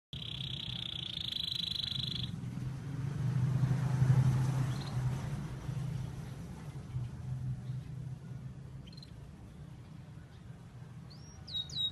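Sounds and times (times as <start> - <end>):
canary rattling trill: 0.1 - 2.5.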